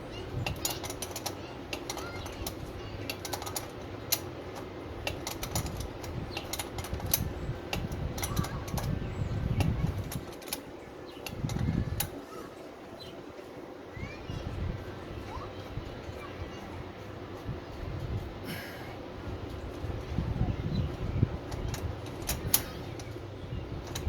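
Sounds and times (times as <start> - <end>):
clicks and knocks of car parts: 0.4 - 9.0, 9.6 - 12.2
low handling rumble: 1.4 - 24.0.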